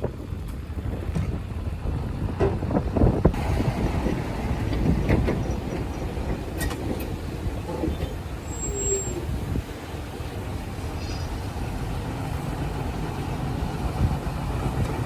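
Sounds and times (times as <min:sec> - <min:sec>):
brief squeal: 0:08.0 - 0:09.3.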